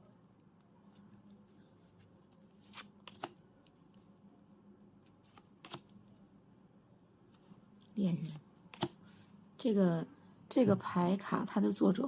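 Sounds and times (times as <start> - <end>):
cards sliding and flicking: 0.9 - 4.0, 5.0 - 6.2, 8.7 - 9.0.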